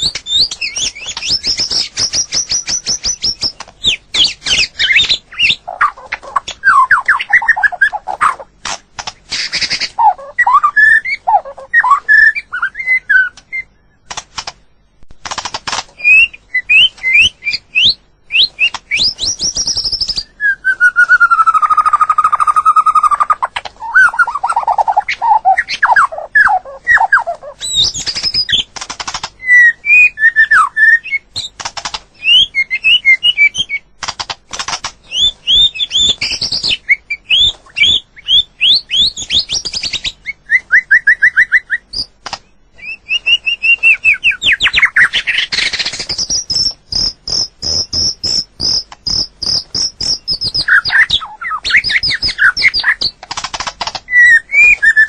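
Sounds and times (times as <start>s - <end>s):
bird singing whistled notes: 0.0s - 8.4s, 9.4s - 14.1s, 16.0s - 28.7s, 29.4s - 31.5s, 32.2s - 33.8s, 35.0s - 42.1s, 42.8s - 53.2s, 54.1s - 55.0s
sharp clicks: 0.0s - 10.0s, 13.3s - 16.2s, 27.3s - 29.4s, 31.4s - 32.4s, 33.5s - 38.0s, 41.9s - 42.5s, 43.2s - 55.0s.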